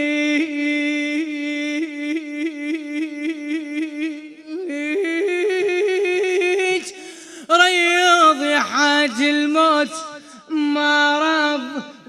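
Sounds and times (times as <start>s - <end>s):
man singing unaccompanied: 0.0s - 12.0s
man taking a breath: 7.0s - 7.5s.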